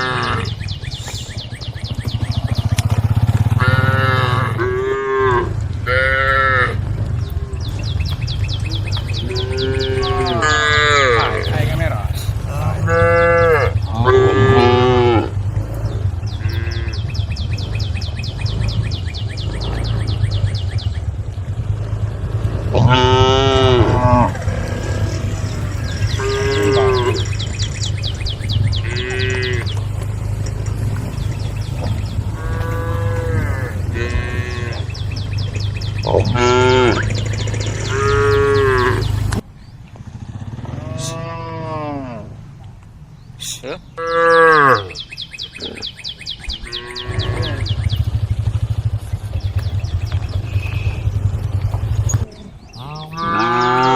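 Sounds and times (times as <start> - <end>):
cow mooing: 0.0 - 0.6, 3.5 - 7.8, 8.6 - 17.2, 22.6 - 30.0, 31.7 - 35.3, 36.0 - 37.1, 37.8 - 39.2, 40.6 - 42.4, 44.0 - 45.0, 46.6 - 48.1, 52.1 - 53.9.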